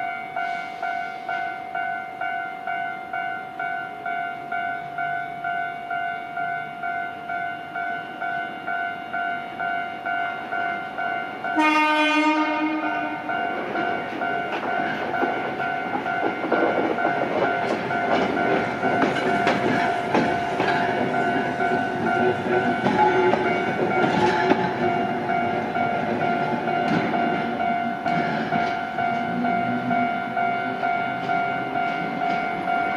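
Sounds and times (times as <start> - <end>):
train horn: 11.5 - 13.4, 22.5 - 24.7
train wheels clattering: 11.6 - 32.9
level crossing bell ringing: 12.8 - 32.9.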